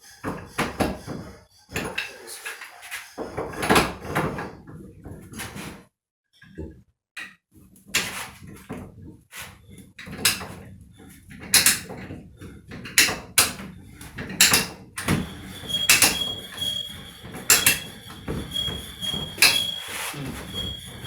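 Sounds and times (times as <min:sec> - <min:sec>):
thin high whine: 0:15.0 - 0:21.0.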